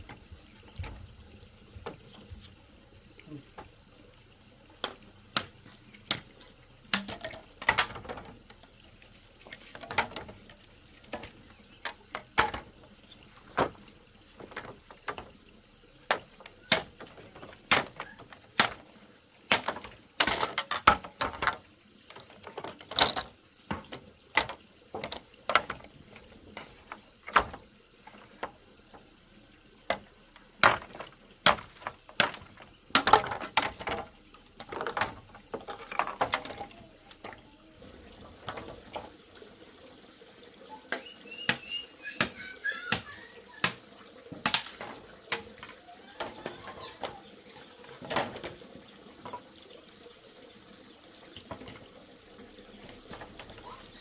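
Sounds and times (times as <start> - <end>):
wood knocking and clattering: 6.9 - 8.6, 9.4 - 10.5, 11.1 - 12.8, 13.4 - 15.4, 16.1 - 18.8, 19.5 - 29.0, 29.9 - 37.4, 44.3 - 47.2, 48.0 - 48.6.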